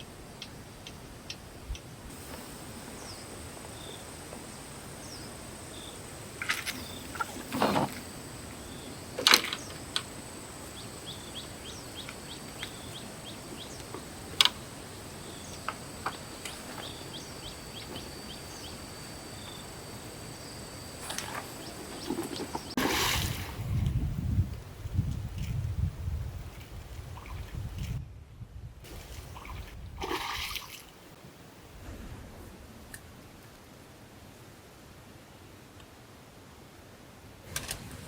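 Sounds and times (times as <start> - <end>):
steady high whine: 0.0 - 22.8
small birds chirping: 8.6 - 22.8, 27.2 - 27.9.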